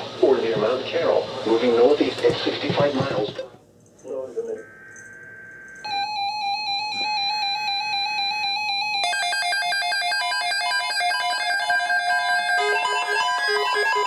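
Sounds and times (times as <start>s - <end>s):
electronic keyboard music: 5.6s - 14.0s.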